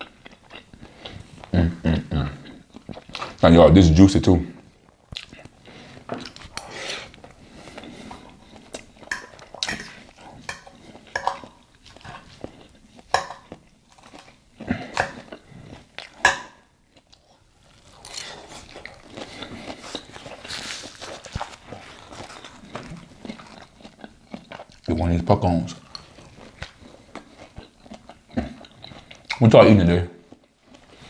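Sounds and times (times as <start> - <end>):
close-up chewing: 0.0 - 1.6, 2.3 - 3.4, 4.5 - 25.0, 25.8 - 29.4, 30.2 - 31.0
cutlery clinking on a plate: 9.1 - 12.3, 13.1 - 14.3, 15.0 - 15.3.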